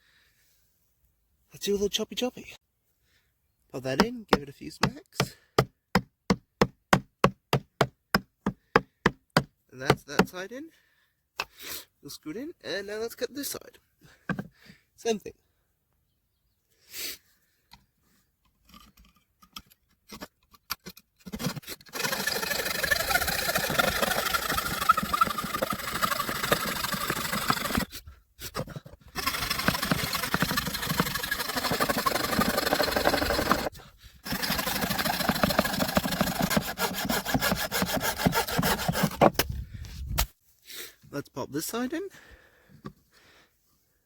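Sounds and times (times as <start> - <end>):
saw cutting wood: 21.3 - 28.0, 28.6 - 39.3.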